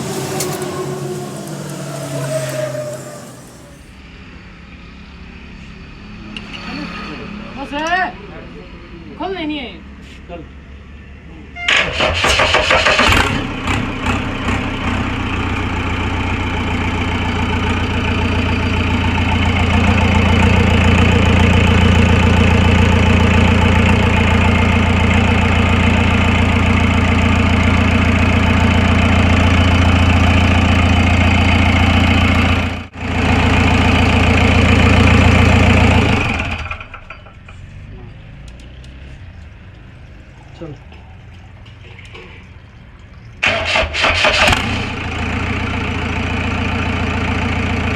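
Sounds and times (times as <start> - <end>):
diesel engine starter cranking: 0.0 - 4.0, 11.6 - 14.8, 43.4 - 45.0
diesel engine running: 0.0 - 4.2, 11.7 - 38.1, 43.4 - 47.9.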